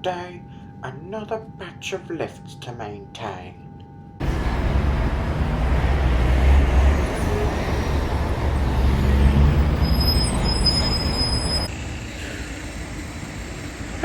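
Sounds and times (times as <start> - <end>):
vehicle engine rumbling: 4.2 - 14.0.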